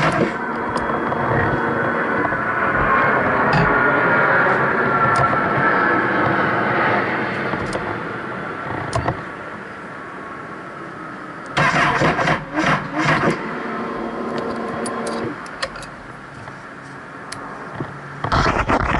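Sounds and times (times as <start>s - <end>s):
motorcycle electric starter cranking: 11.6s - 13.4s.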